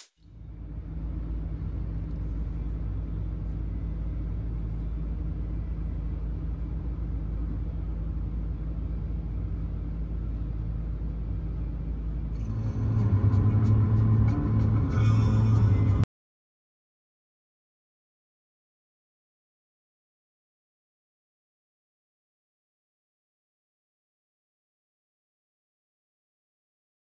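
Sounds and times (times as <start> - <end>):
higher engine sounds: 0.0 - 16.1
vehicle engine rumbling: 0.3 - 16.1.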